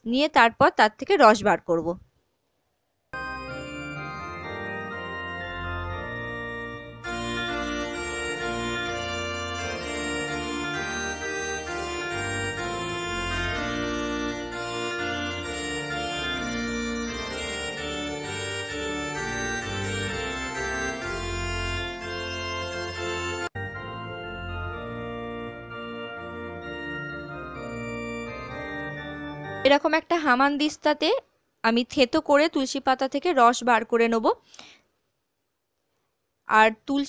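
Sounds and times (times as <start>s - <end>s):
organ-like chords: 3.2s - 29.8s.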